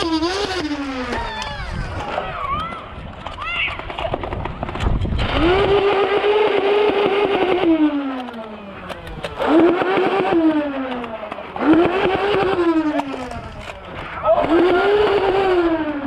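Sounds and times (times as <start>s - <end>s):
toy blaster motors whining: 0.0s - 3.8s, 5.2s - 16.0s.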